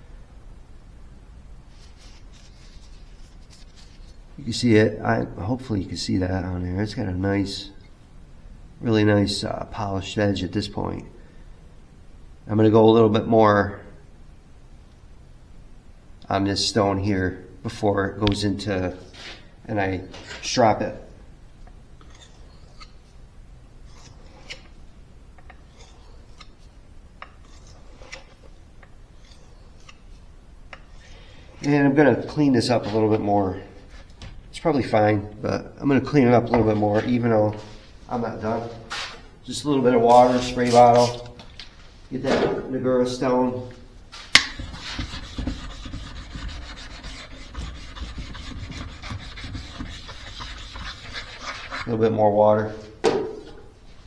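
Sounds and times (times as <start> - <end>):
knife scraping on whetstone: 22.0 - 23.2, 25.5 - 28.5, 29.2 - 31.3, 40.1 - 41.3, 44.4 - 51.9.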